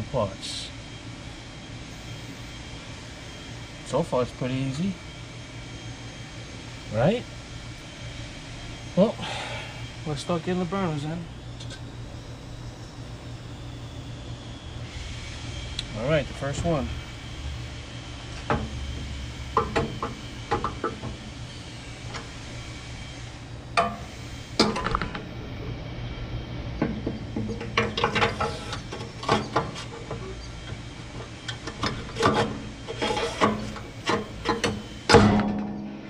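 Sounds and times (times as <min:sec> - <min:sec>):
metal clinking and scraping: 0:27.4 - 0:35.8.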